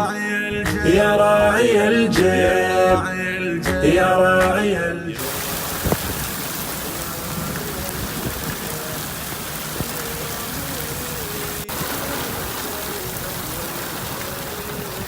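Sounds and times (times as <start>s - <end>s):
heavy rain falling: 5.2s - 15.0s
faint sung melody: 6.6s - 15.0s.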